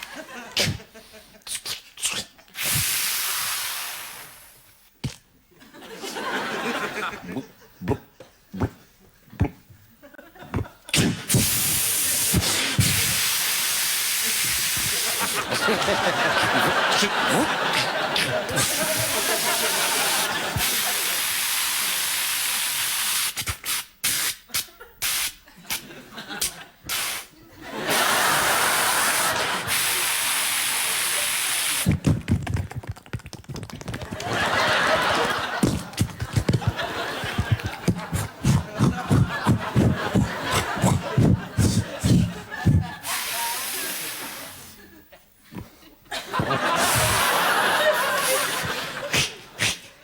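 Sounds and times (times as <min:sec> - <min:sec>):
man making hissing mouth sound: 0:00.5 - 0:05.2, 0:07.3 - 0:09.6, 0:10.5 - 0:25.8, 0:26.4 - 0:27.3, 0:28.4 - 0:32.2, 0:35.6 - 0:44.9, 0:46.8 - 0:47.3, 0:48.2 - 0:50.0.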